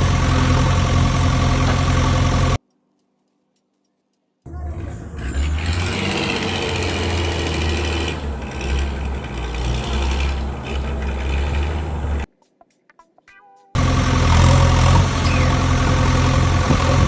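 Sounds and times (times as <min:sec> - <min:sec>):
heavy vehicle engine rumbling: 0:00.0 - 0:02.6, 0:04.5 - 0:12.3, 0:13.8 - 0:17.0.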